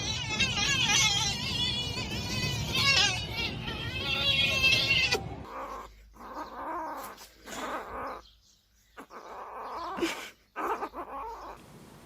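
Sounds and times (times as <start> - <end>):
cat yowling: 0.0 - 8.2.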